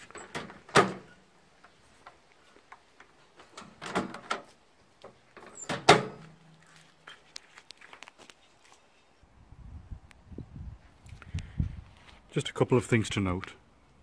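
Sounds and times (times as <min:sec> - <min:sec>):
microwave door clunking: 0:05.6 - 0:06.2.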